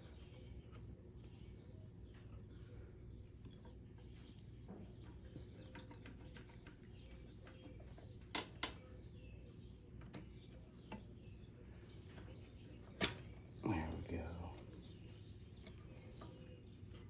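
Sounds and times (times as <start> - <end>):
faint low hum: 0.0 - 17.0
sharp clicks: 8.3 - 8.8.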